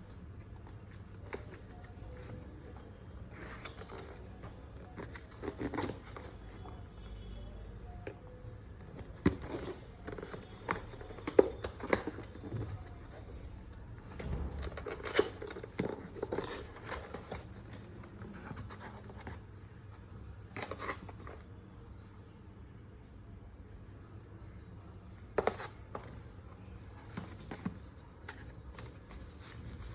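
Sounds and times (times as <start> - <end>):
rustling and scraping: 0.0 - 6.8, 13.9 - 21.5, 25.1 - 29.9.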